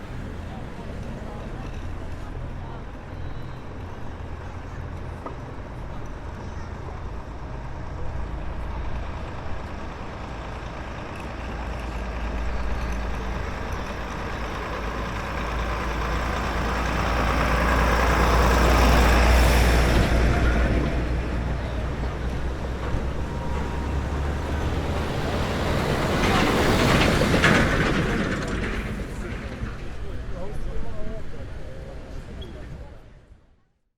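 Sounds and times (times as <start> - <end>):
vintage vehicles driving past: 0.0 - 32.8
heavy engines rumbling: 0.0 - 33.4.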